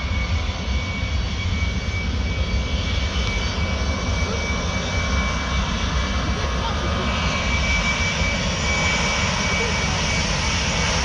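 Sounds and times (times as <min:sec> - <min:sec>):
jet engines rumbling and whining: 0:00.0 - 0:11.0.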